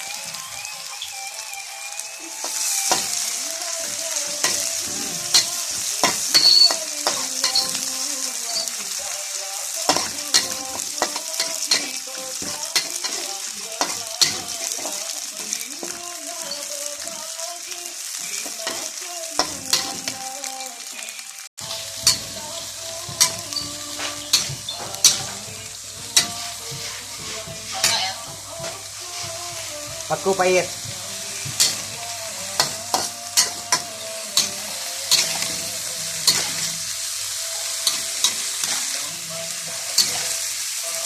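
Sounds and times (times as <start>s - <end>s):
food sizzling in a pan: 0.0s - 41.0s
spatula scraping a pan: 9.9s - 17.2s, 21.6s - 36.9s, 37.5s - 40.4s.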